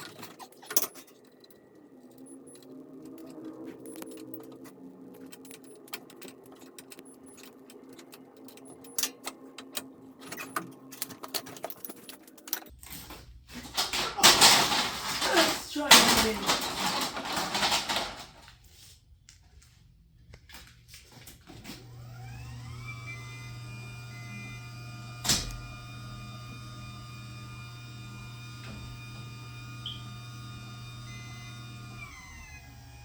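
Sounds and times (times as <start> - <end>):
garage door opener motor humming: 21.5 - 33.0.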